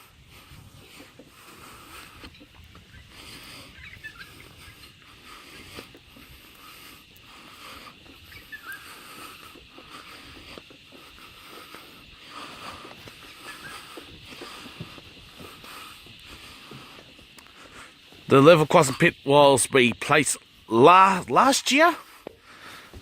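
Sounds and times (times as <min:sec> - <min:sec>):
footsteps walking: 0:00.0 - 0:23.0
outdoor background hiss: 0:00.0 - 0:23.0
faint high chirps: 0:08.2 - 0:09.1.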